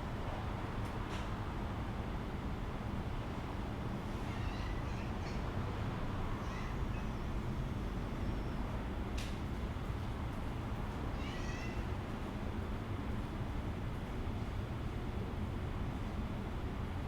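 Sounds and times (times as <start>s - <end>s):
faint high-pitched animal calls: 6.4s - 7.2s, 11.2s - 11.9s.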